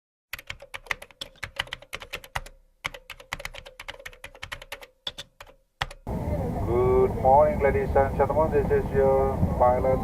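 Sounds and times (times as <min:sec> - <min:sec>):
keyboard typing clicks: 0:00.3 - 0:06.1.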